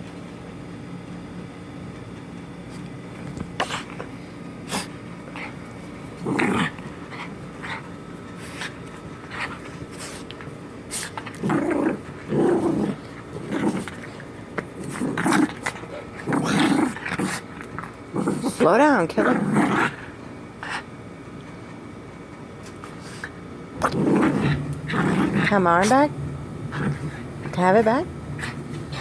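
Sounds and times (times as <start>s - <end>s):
dog growling: 3.5s - 4.1s, 4.7s - 10.1s, 11.0s - 20.9s, 23.8s - 29.0s.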